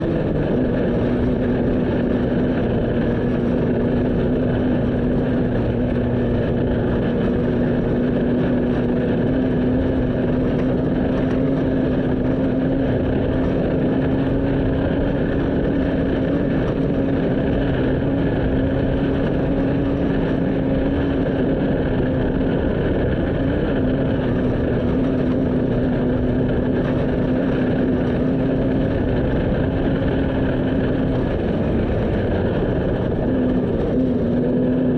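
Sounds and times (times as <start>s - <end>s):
road and wind noise: 0.0s - 34.9s
vehicle engine droning: 0.0s - 34.9s.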